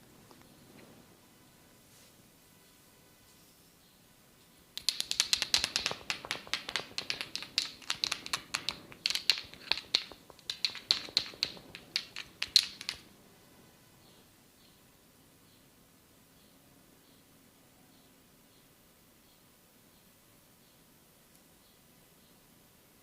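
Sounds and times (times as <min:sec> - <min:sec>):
sharp snaps and taps of massage: 0:04.8 - 0:13.1.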